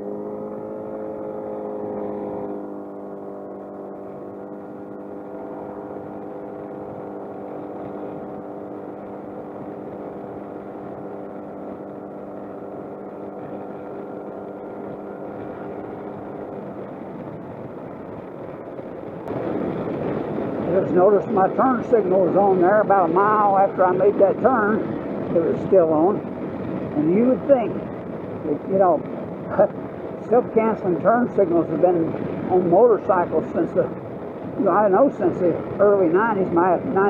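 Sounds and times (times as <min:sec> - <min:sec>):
scooter engine cruising: 0:00.0 - 0:19.9
road noise: 0:00.0 - 0:37.0
wind noise: 0:01.5 - 0:37.0.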